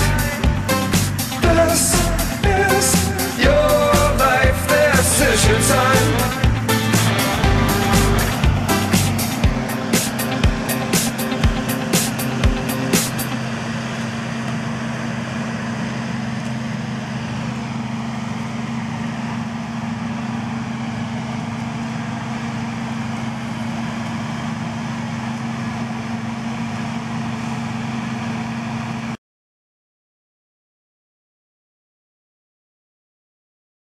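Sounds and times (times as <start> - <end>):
farm machinery engine running: 0.0 - 29.2.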